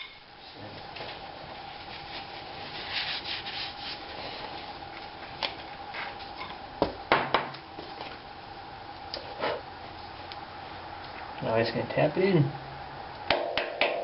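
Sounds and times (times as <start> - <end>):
tools rubbing and scraping: 1.9 - 4.6, 9.2 - 9.7.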